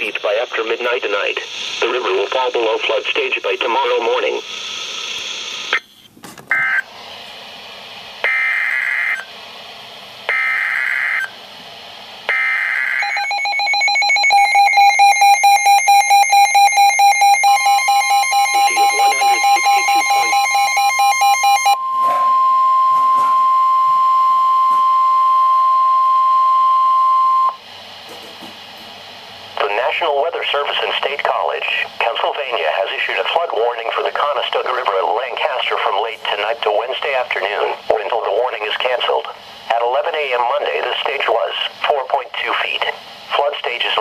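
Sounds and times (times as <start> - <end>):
steady warning alarm tone: 6.5 - 6.9, 8.2 - 9.4, 10.3 - 11.4, 12.3 - 27.7
screeching data bursts: 14.4 - 22.4.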